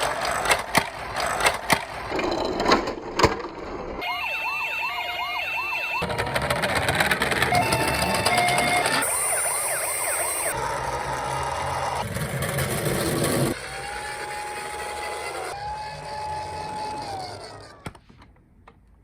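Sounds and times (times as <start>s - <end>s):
emergency vehicle sirens: 4.0s - 12.1s, 13.5s - 17.9s.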